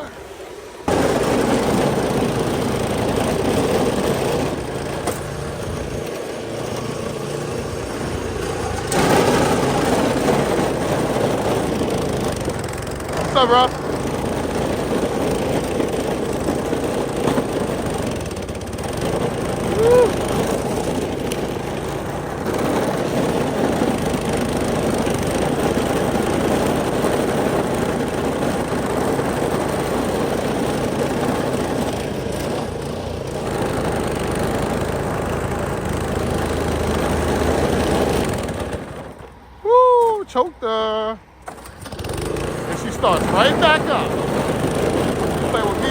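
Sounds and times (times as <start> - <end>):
snowblower engine running: 0.0 - 45.9.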